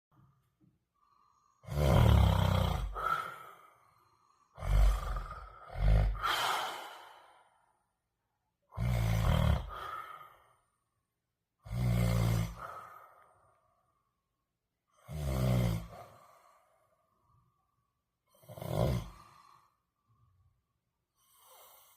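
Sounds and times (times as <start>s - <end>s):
man snoring loudly: 1.6s - 3.5s, 4.6s - 6.9s, 8.7s - 10.2s, 11.6s - 12.8s, 15.0s - 16.1s, 18.4s - 19.3s.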